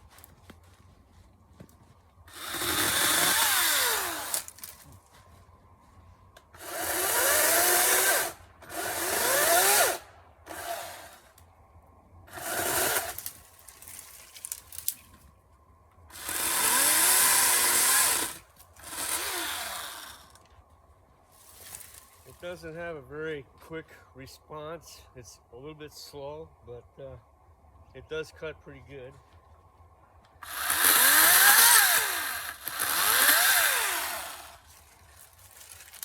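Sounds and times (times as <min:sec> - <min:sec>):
electric chainsaw bursts: 0:02.3 - 0:04.6, 0:06.6 - 0:11.3, 0:12.3 - 0:13.4, 0:16.1 - 0:20.4, 0:30.4 - 0:34.7.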